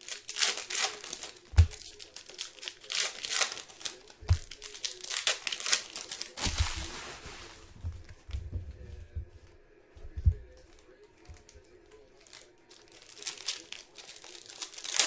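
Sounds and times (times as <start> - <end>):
card pack wrappers crinkling and tearing: 0.0 - 7.8, 10.6 - 15.0
dull knocks of handling: 1.5 - 1.9, 4.2 - 4.6, 6.4 - 11.6.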